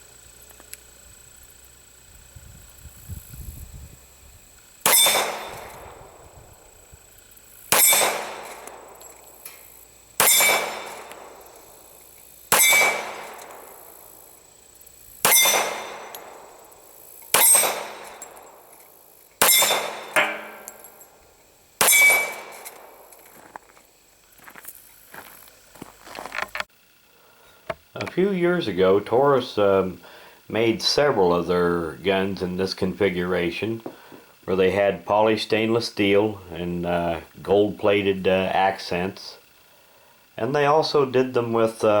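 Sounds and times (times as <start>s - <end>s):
pistol shots: 4.8s - 6.3s, 7.7s - 9.6s, 10.2s - 14.3s, 15.2s - 18.8s, 19.4s - 21.2s, 21.8s - 23.2s.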